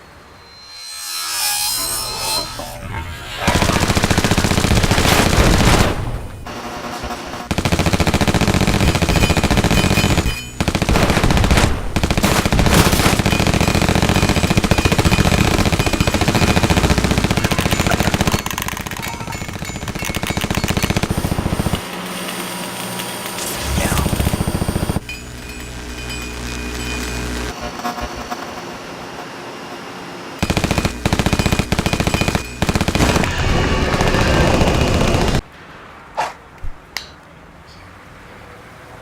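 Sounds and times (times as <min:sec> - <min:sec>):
automatic gunfire: 0:03.6 - 0:21.8, 0:30.4 - 0:35.5.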